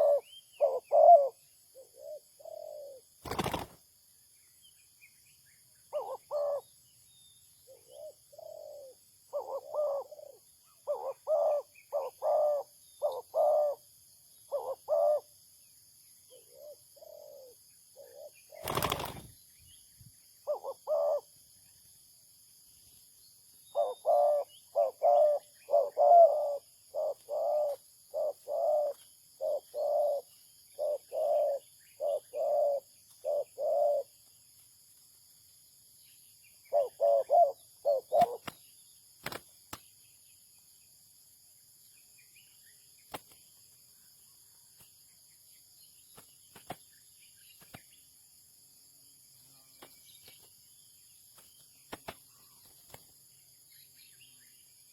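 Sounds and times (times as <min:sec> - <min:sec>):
dove cooing: 0:00.0 - 0:03.6, 0:05.9 - 0:06.7, 0:07.7 - 0:13.8, 0:14.5 - 0:15.3, 0:16.3 - 0:19.2, 0:20.4 - 0:21.3, 0:23.7 - 0:34.1, 0:36.7 - 0:38.5.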